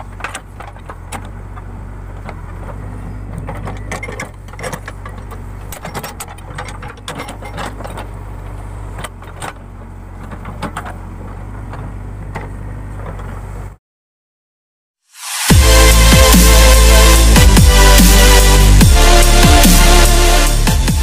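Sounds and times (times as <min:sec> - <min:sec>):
metallic clanks and rattles: 0:00.0 - 0:13.7
diesel engine running: 0:00.0 - 0:13.8, 0:15.5 - 0:21.0.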